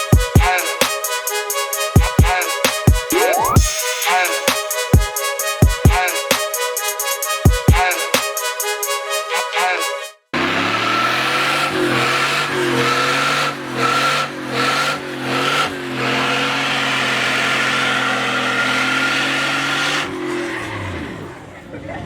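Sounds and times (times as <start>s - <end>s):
car engine running and blipping: 0.0s - 6.0s, 10.4s - 22.0s.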